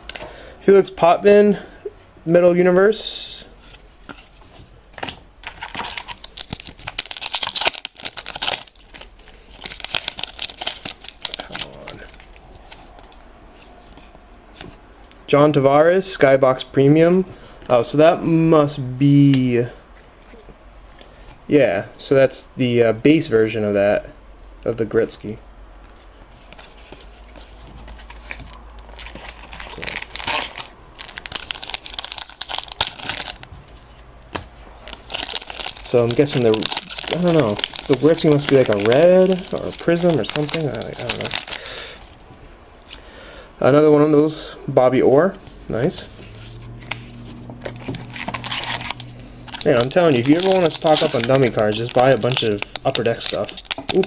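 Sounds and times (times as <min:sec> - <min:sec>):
card packs crinkling: 0:05.0 - 0:13.2, 0:26.4 - 0:33.5, 0:34.8 - 0:42.1, 0:47.6 - 0:54.0
cards clicking and scraping: 0:46.8 - 0:54.0.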